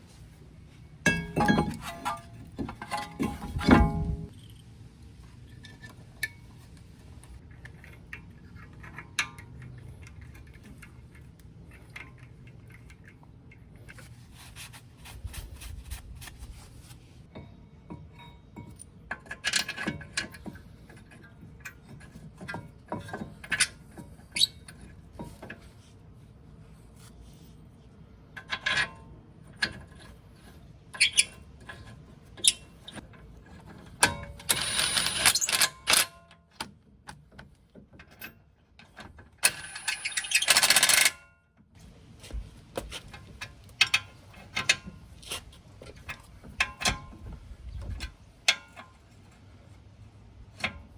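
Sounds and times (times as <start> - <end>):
low steady background hum: 0.0 - 50.9
metal tools clinking and scraping: 1.1 - 4.6, 39.4 - 41.1.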